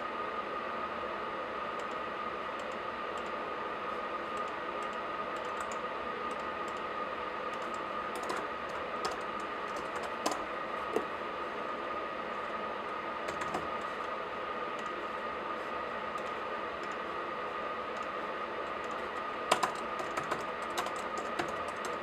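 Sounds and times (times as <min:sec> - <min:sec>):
laptop keyboard typing: 0:04.3 - 0:06.9, 0:07.5 - 0:11.1, 0:13.2 - 0:14.0, 0:16.0 - 0:17.1, 0:17.9 - 0:22.0.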